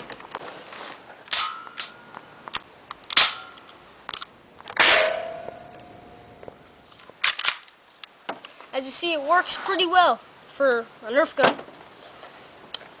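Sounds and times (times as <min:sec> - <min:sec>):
ringing tone: 0:04.9 - 0:06.4.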